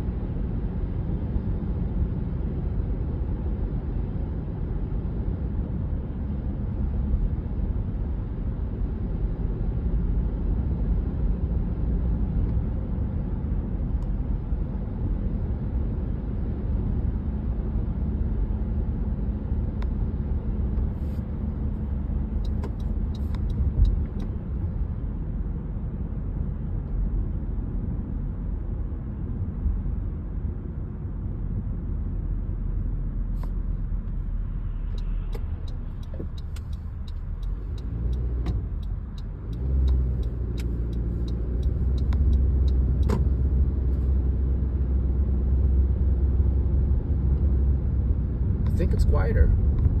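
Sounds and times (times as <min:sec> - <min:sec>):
car engine and road rumble: 0:00.0 - 0:50.0
small sharp clicks: 0:34.9 - 0:43.3.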